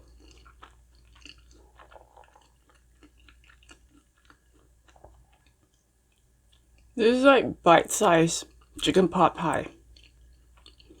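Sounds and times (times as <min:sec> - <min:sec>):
person chewing crispy food: 0:00.0 - 0:06.9, 0:09.7 - 0:11.0.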